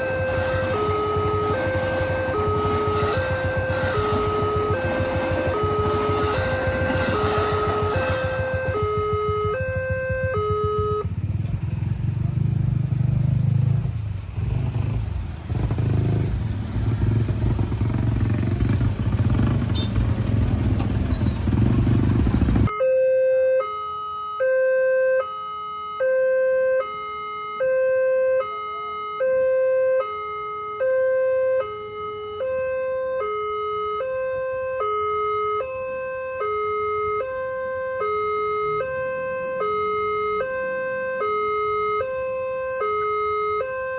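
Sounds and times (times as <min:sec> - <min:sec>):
level crossing alarm two-tone: 0:00.0 - 0:11.1, 0:22.7 - 0:43.9.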